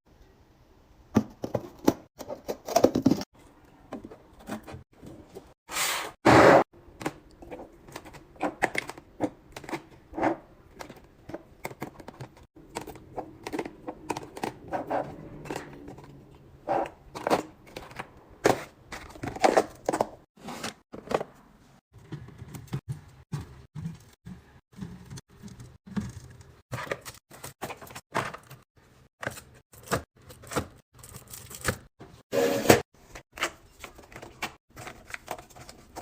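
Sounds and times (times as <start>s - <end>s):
plastic containers clicking and knocking: 6.9s - 10.0s, 10.7s - 16.1s.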